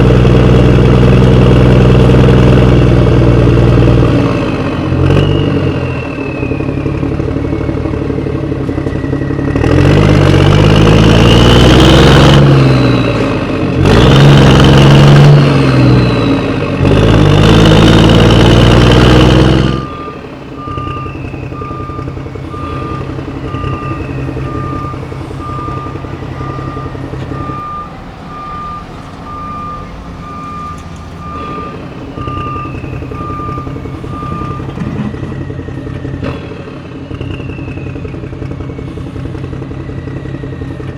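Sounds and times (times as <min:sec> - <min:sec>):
heavy vehicle engine revving: 0:00.0 - 0:40.9
reversing alarm beeping: 0:04.8 - 0:13.2, 0:17.6 - 0:40.9.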